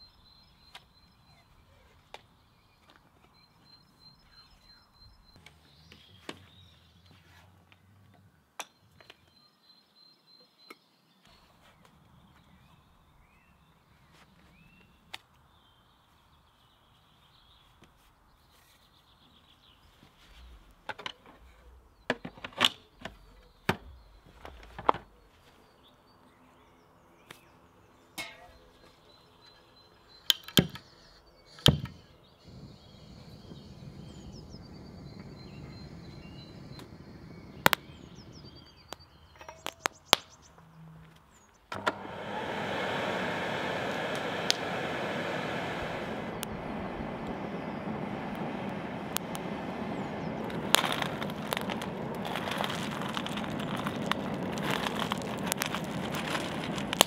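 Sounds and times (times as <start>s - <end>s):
faint bird chirps: 0.0s - 7.4s, 8.6s - 41.7s
low steady rushing: 32.5s - 38.8s, 42.1s - 57.0s.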